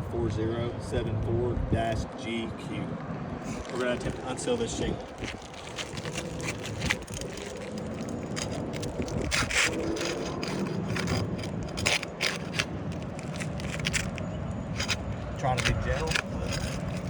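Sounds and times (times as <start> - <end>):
roof shingle scraping and crackling: 3.4 - 17.0.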